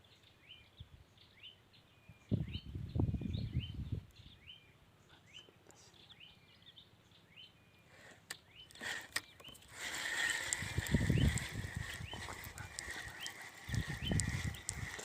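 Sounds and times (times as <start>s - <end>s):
small bird chirping: 0.0s - 15.0s
rustling hiss: 7.9s - 15.0s.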